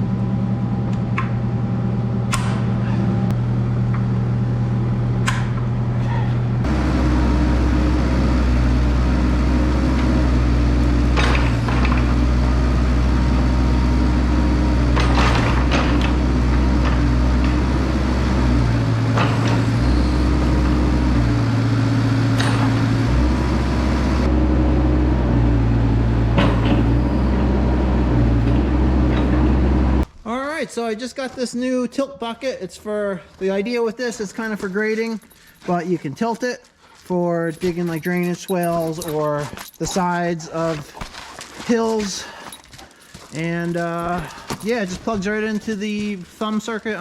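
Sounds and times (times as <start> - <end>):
vehicle engine humming: 0.0 - 30.1.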